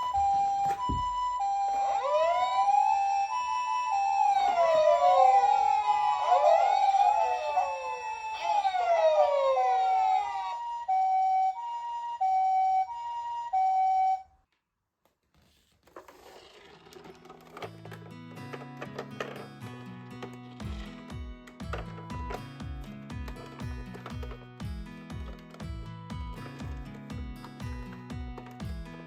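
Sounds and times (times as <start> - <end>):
wailing sirens: 0.0 - 14.2
two-tone hi-lo siren: 0.0 - 14.4
faint clatter: 15.1 - 22.4.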